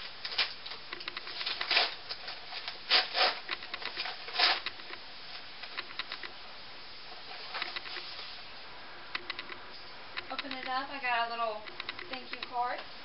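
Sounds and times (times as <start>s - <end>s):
package ripping: 0.2s - 4.8s
package rustling and scraping: 0.2s - 6.3s.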